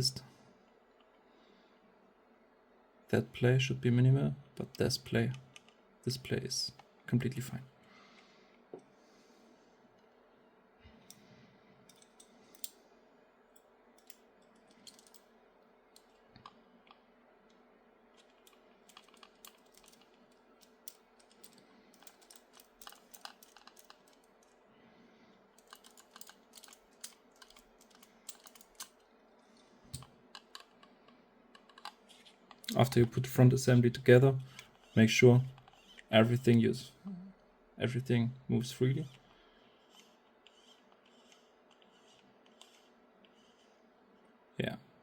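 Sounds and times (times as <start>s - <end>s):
plastic parts clicking and tapping: 14.0s - 15.3s, 18.2s - 24.6s, 25.6s - 33.3s.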